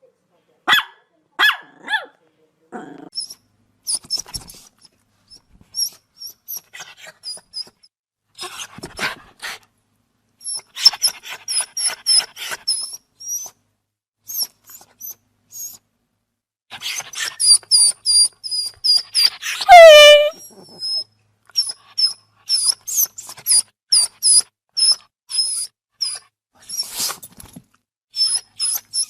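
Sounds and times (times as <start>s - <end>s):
dog whimpering squeaks: 3.2s - 7.9s, 10.4s - 13.6s, 14.3s - 15.8s, 16.8s - 27.2s, 28.1s - 29.0s
dog whining: 16.8s - 27.2s, 28.2s - 29.0s.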